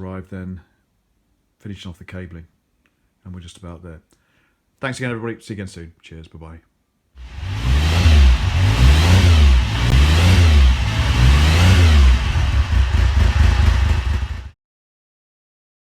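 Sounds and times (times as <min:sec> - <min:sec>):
engine revving: 0:07.2 - 0:14.6.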